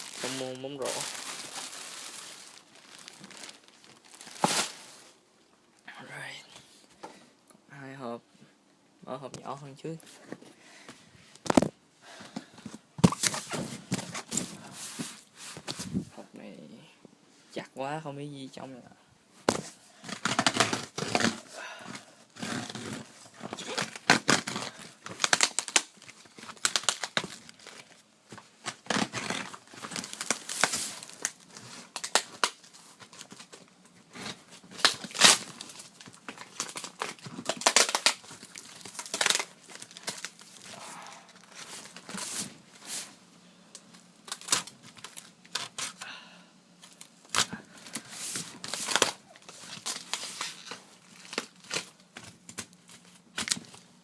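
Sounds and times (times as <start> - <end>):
packaging crinkling: 0.0 - 5.0, 22.4 - 43.0, 46.8 - 53.9
cardboard box tearing: 22.4 - 25.8.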